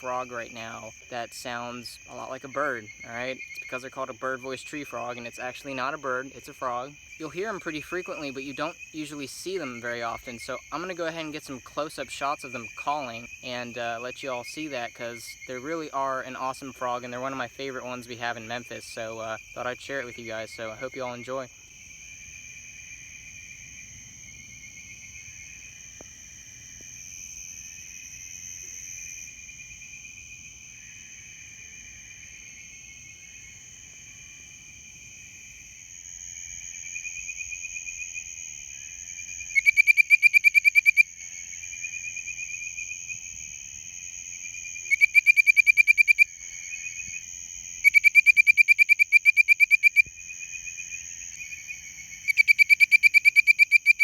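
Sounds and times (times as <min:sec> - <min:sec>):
distant frog chorus warbling: 0:00.0 - 0:54.0
high insect drone: 0:00.0 - 0:54.0
frog whistled bird-like notes: 0:39.4 - 0:41.1, 0:44.8 - 0:47.2, 0:47.8 - 0:50.1, 0:51.4 - 0:54.0.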